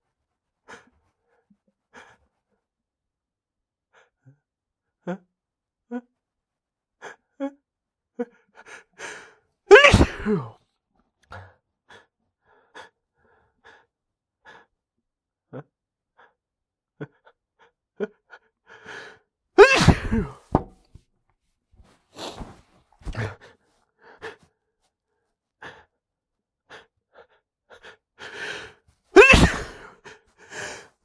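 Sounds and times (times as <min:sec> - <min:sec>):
man sneezing: 0:09.7 - 0:10.6, 0:19.6 - 0:20.5, 0:29.2 - 0:30.0.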